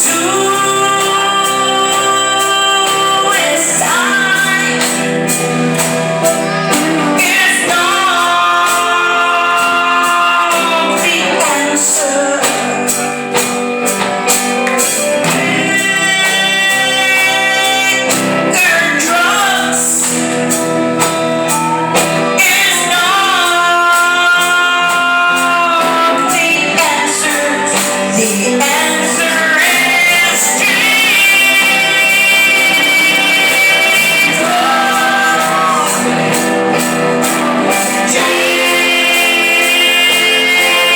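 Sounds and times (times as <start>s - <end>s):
woman singing: 0.0s - 5.6s, 6.2s - 13.2s, 21.4s - 40.9s
instrumental backing music: 0.0s - 40.9s.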